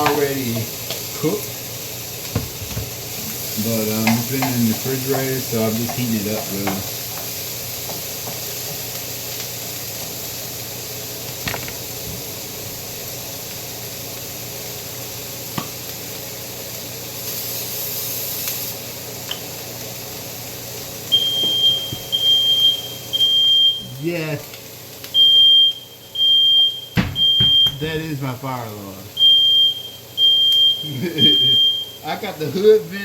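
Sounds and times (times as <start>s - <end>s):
meat sizzling in a frying pan: 0.0s - 27.0s, 27.8s - 33.0s
smoke alarm beeping: 21.1s - 24.1s, 25.1s - 28.5s, 29.1s - 32.2s.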